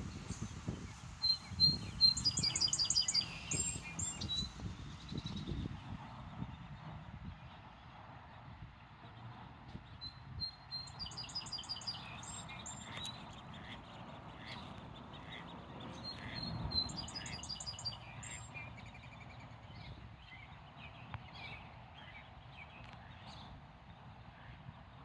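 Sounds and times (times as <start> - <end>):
outdoor background hiss: 0.0 - 5.1
high-pitched bird chirps: 1.3 - 4.5.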